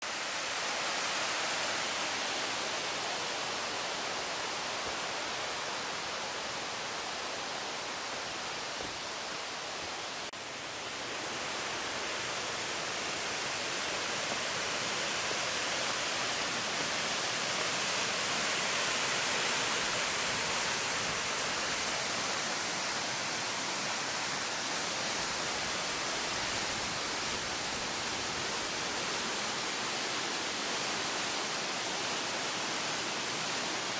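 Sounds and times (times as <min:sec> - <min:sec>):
waterfall rushing: 0:00.0 - 0:33.9.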